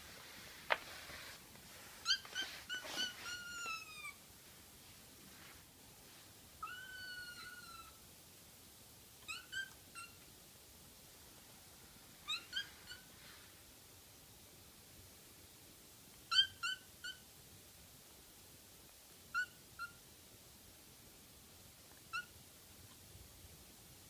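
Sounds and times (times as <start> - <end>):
kitten meowing: 2.0 - 4.2, 6.6 - 8.0, 9.2 - 10.2, 12.3 - 13.0.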